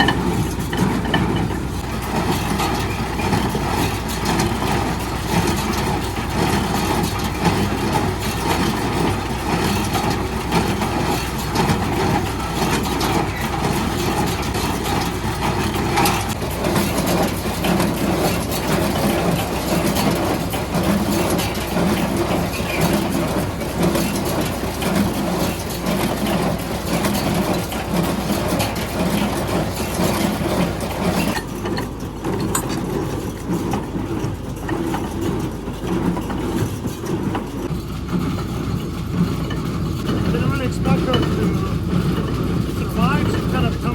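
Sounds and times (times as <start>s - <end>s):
tractor engine running: 0.0s - 43.9s.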